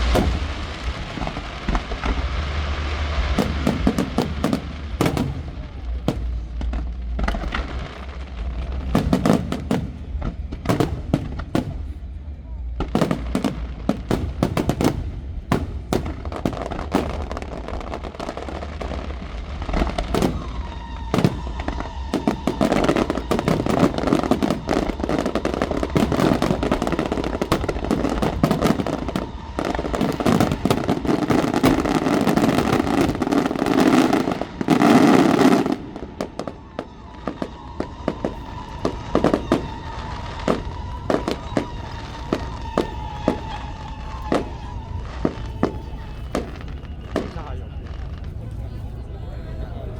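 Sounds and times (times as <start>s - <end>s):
fireworks bangs and crackles: 0.0s - 49.9s.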